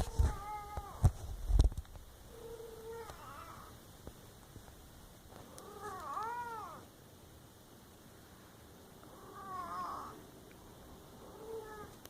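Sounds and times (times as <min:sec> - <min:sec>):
cat meowing: 0:00.0 - 0:01.1, 0:02.3 - 0:03.8, 0:05.5 - 0:06.9, 0:09.1 - 0:10.2, 0:11.2 - 0:12.0.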